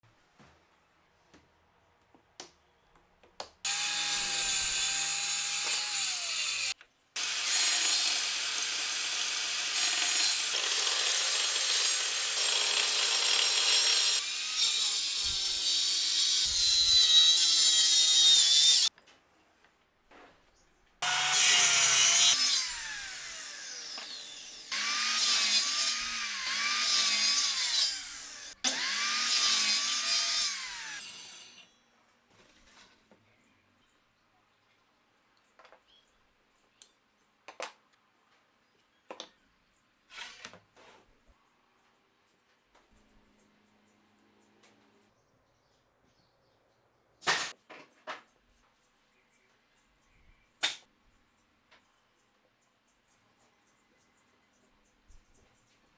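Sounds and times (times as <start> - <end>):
electric saw cutting wood: 3.7 - 18.9, 21.0 - 31.6.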